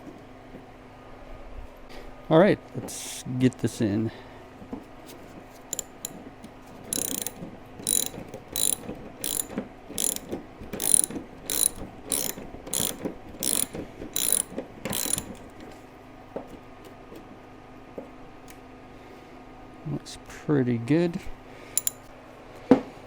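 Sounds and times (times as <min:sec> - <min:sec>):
ratchet wrench clicking: 0:05.7 - 0:06.2, 0:06.9 - 0:15.4, 0:21.8 - 0:22.1.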